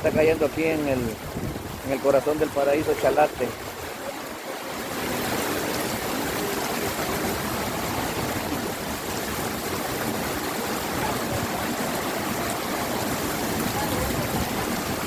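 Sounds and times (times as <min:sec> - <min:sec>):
heavy rain pouring: 0:00.0 - 0:15.0.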